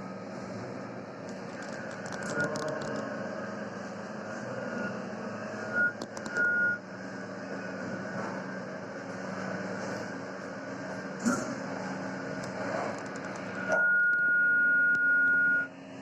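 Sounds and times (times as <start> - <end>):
low rumble of machinery: 0.0 - 16.0
vehicle reversing alarm beeps: 4.4 - 6.8, 13.5 - 15.7.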